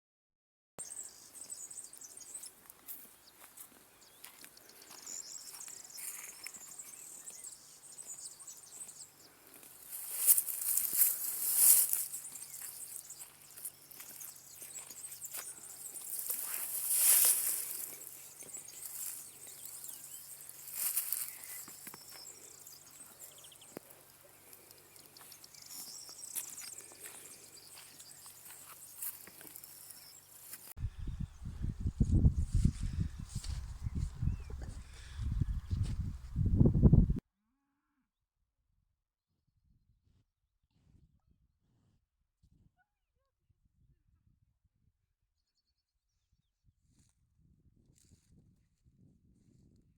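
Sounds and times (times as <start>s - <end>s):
high-pitched insect chirping: 10.0s - 23.6s.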